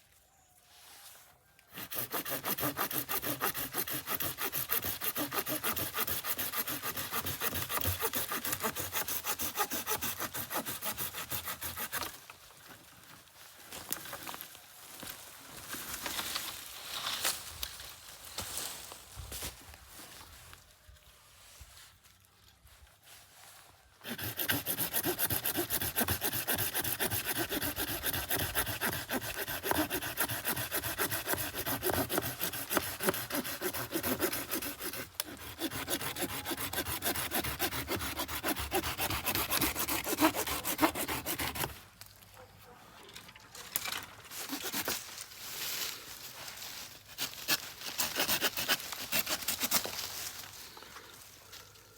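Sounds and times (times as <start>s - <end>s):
saw cutting through wood: 1.7s - 12.2s, 24.0s - 41.8s, 44.3s - 45.2s, 47.1s - 50.5s.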